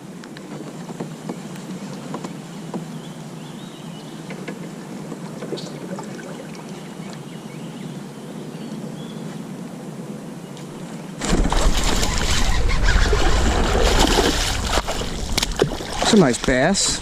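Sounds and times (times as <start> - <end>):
water lapping on hull: 4.2 - 7.2, 11.2 - 17.0.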